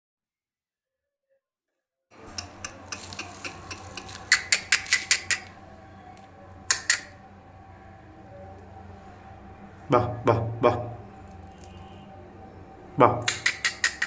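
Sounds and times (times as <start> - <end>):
sharp clicks: 2.2 - 5.6, 6.7 - 7.2, 13.2 - 14.0.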